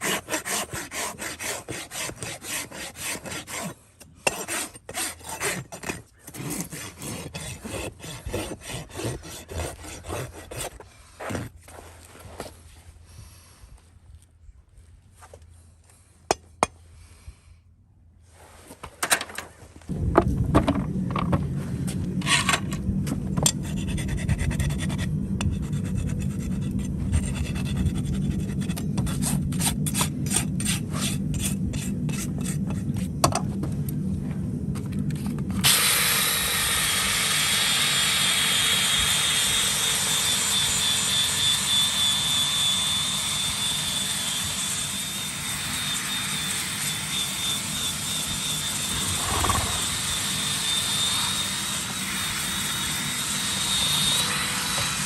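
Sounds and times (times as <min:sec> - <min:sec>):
rasp filing a hoof: 0:00.0 - 0:12.1, 0:23.4 - 0:33.2, 0:48.2 - 0:51.8
power tool whining: 0:35.6 - 0:55.0.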